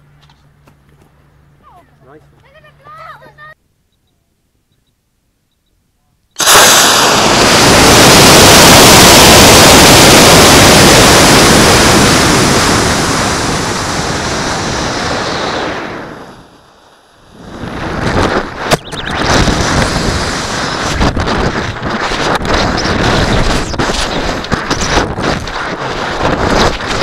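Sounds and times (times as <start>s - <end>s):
rocket motor roaring: 6.4s - 27.0s
rushing air: 6.4s - 27.0s.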